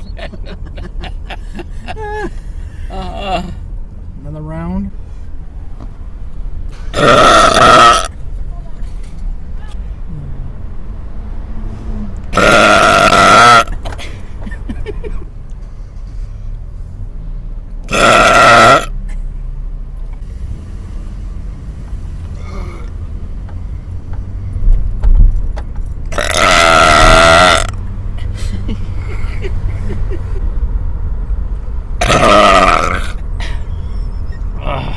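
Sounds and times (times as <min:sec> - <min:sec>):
car moving low hum: 0:00.0 - 0:34.9
loud belches: 0:06.9 - 0:08.1, 0:12.4 - 0:13.7, 0:17.9 - 0:18.9, 0:26.1 - 0:27.8, 0:32.0 - 0:33.2.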